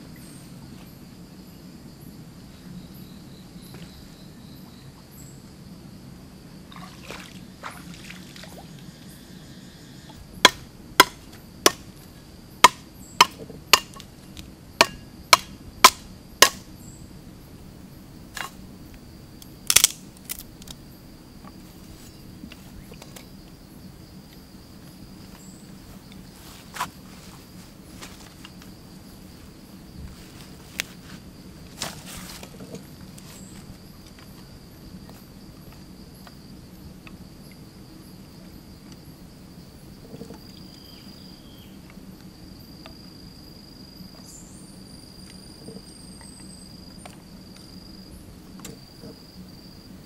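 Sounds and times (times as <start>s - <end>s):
high insect buzz: 0.0s - 50.0s
sharp knocks: 14.8s - 16.7s.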